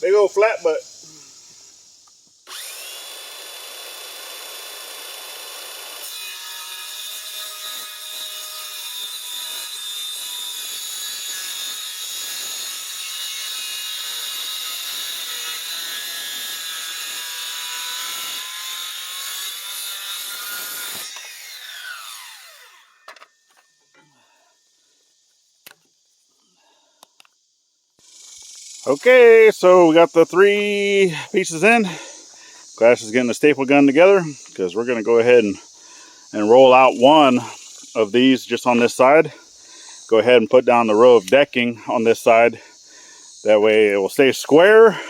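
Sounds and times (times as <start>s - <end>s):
saw blade spinning down: 2.5s - 6.4s, 15.0s - 23.3s
electric saw cutting wood: 2.5s - 23.6s.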